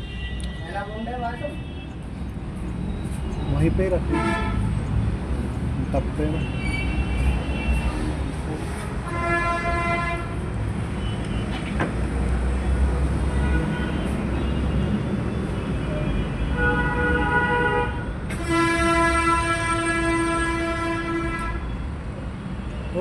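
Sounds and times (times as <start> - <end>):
horn blasts: 9.0 - 10.4, 16.6 - 21.7.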